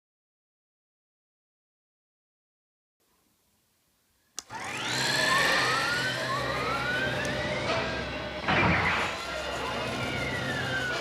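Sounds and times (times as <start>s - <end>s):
turret turning sound effect: 8.4s - 11.0s.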